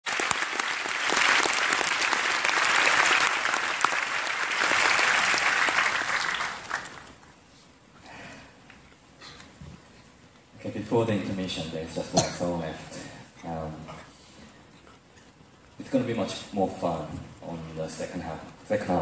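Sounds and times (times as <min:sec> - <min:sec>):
audience applauding: 0:00.0 - 0:07.2.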